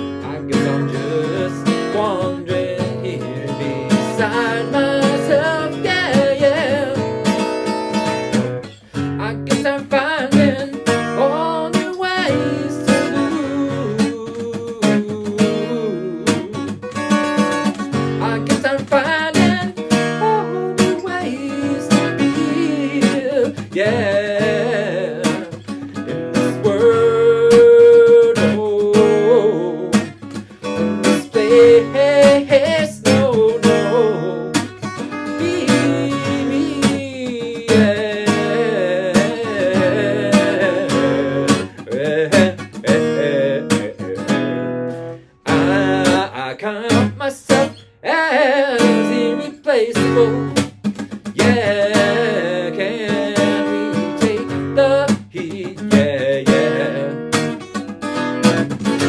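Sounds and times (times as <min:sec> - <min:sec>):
person singing: 0:00.0 - 0:16.9, 0:18.1 - 0:57.8
strummed acoustic guitar: 0:00.0 - 0:59.0.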